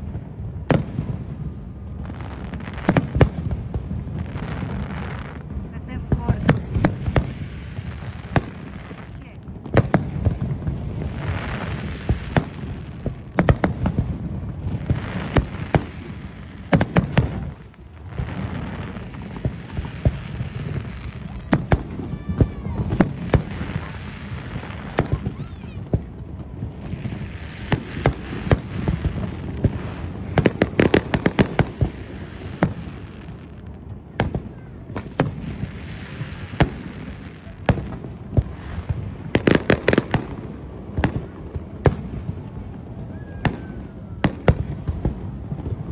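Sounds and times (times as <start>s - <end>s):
fireworks bangs: 0.0s - 45.9s
fireworks crackling hiss: 0.0s - 45.9s.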